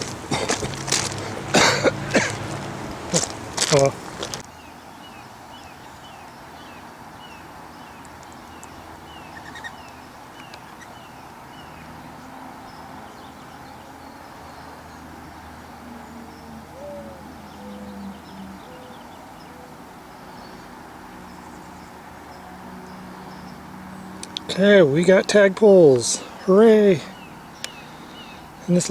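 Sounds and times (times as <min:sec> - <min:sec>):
outdoor background hiss: 0:00.0 - 0:28.9
small bird calling: 0:03.1 - 0:28.9.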